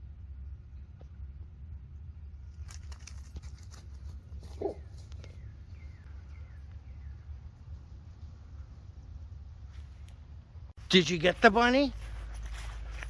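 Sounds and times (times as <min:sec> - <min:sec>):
low rumble: 0:00.0 - 0:02.8
twigs and leaves crackling: 0:02.3 - 0:07.0, 0:11.8 - 0:13.0
bird chirping: 0:04.5 - 0:08.8.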